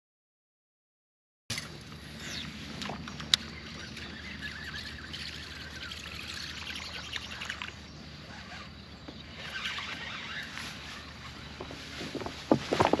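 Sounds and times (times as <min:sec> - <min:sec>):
water splashing against kayak: 0:01.5 - 0:08.2, 0:09.1 - 0:13.0
water dripping: 0:02.8 - 0:07.8.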